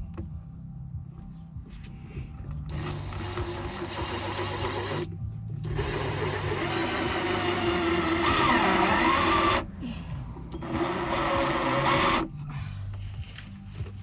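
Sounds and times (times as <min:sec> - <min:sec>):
power drill driving screws into metal: 0:02.7 - 0:05.1, 0:05.7 - 0:09.6, 0:10.6 - 0:12.3.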